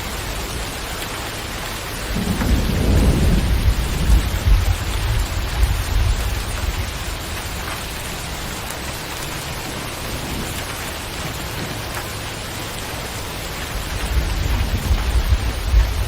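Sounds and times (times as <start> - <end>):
heavy rain falling: 0.0 - 16.0
low thunder rumble: 2.0 - 8.2, 13.7 - 16.0.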